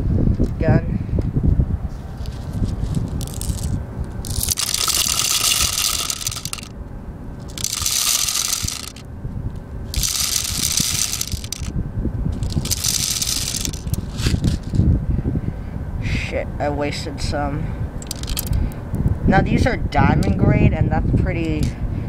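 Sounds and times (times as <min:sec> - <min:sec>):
plastic pellets pouring into metal drum: 0:03.2 - 0:03.7, 0:04.3 - 0:06.7, 0:07.5 - 0:09.0, 0:10.0 - 0:11.7, 0:12.4 - 0:14.4.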